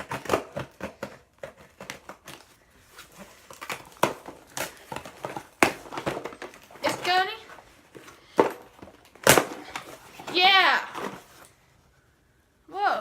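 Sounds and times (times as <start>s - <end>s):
cardboard packaging crinkling and tearing: 0.0s - 8.1s.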